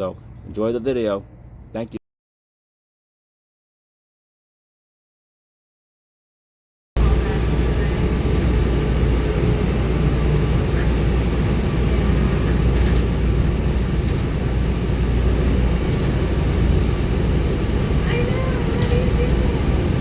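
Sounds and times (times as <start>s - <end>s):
road and tyre noise: 0.0s - 1.9s, 7.0s - 20.0s
bus engine rumble: 0.0s - 2.0s, 7.0s - 20.0s.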